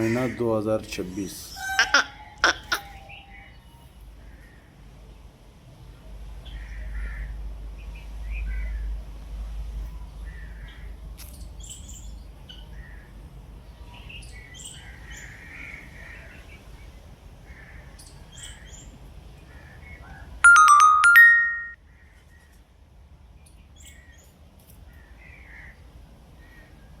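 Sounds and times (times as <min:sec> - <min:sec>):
electronic jingle rising in pitch: 0:20.5 - 0:21.8.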